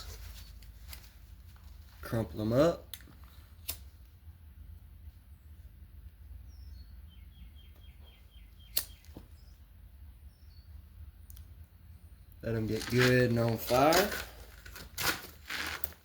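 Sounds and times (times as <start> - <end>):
sharp clicks: 8.7 - 9.2.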